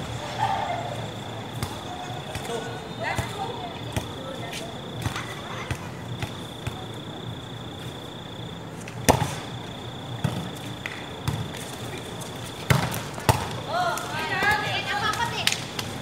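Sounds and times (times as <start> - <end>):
ball bouncing thumps: 12.7 - 13.5.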